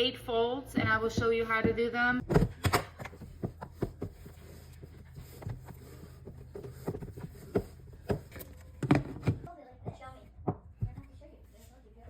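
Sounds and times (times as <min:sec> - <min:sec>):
soft kitchen knocks and taps: 0:05.4 - 0:11.2.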